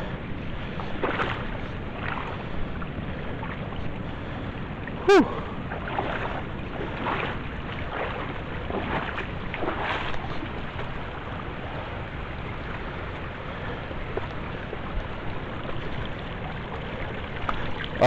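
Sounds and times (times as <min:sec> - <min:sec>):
river water rushing: 0:04.9 - 0:18.0.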